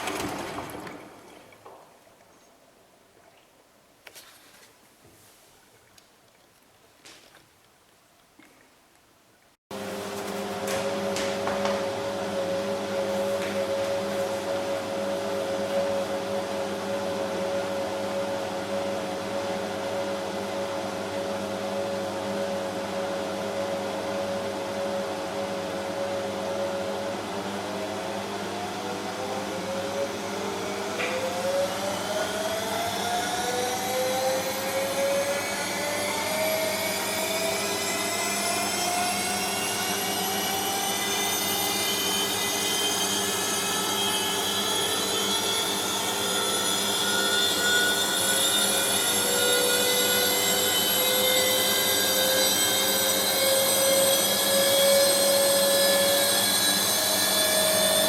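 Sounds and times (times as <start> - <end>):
washing machine drum whining: 0.0 - 1.3, 9.8 - 27.6.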